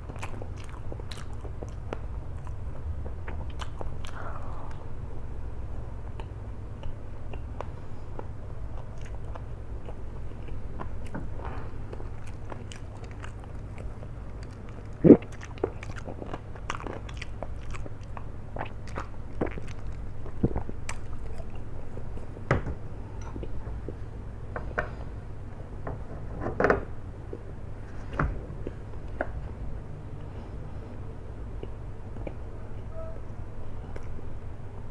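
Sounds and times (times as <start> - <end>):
person chewing noodles: 0.0 - 4.9, 6.0 - 22.4.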